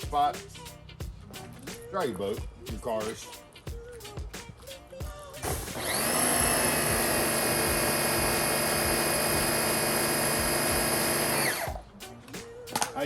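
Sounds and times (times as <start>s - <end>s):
electric blower motor whining: 5.4s - 11.8s.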